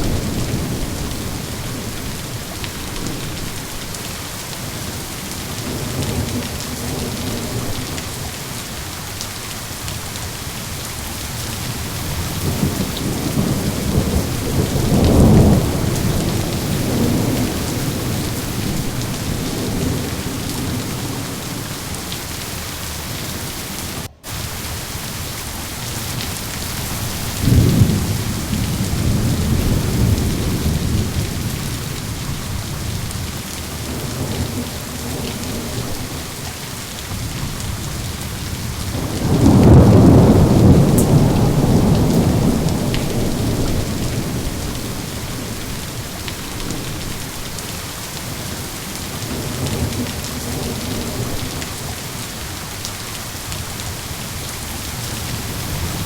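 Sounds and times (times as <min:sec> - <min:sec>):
rolling thunder: 0:00.0 - 0:04.1, 0:11.3 - 0:23.3, 0:25.9 - 0:47.6
steady rain falling: 0:00.0 - 0:56.0.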